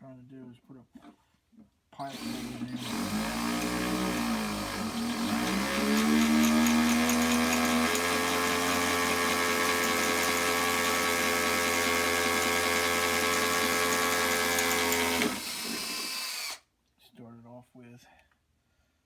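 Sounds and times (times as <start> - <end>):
electric drill motor whining: 2.0 - 16.6.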